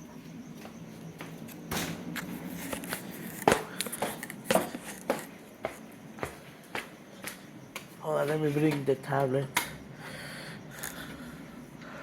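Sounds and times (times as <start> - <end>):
footsteps: 0.2 - 9.4.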